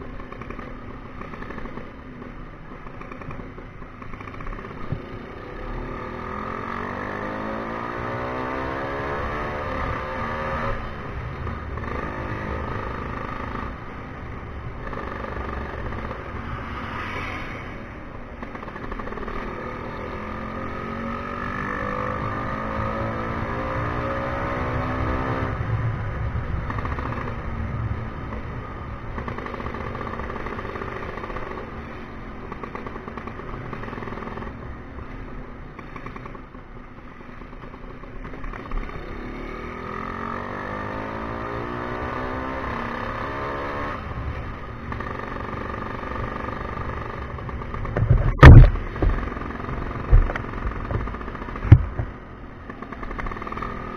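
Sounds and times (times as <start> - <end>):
loud thump: 47.8 - 49.3.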